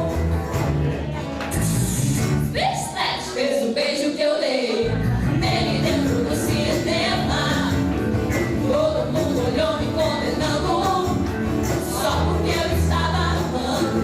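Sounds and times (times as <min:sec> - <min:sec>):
rock band playing: 0:00.0 - 0:02.5, 0:04.9 - 0:14.0
person singing: 0:03.1 - 0:14.0.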